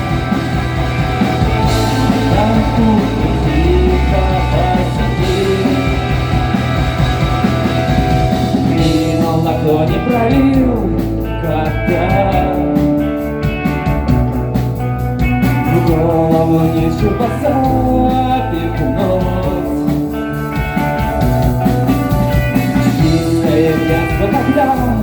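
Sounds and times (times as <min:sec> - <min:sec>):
gliding melodic lead line: 0:00.0 - 0:12.2
rock band playing: 0:00.0 - 0:25.0.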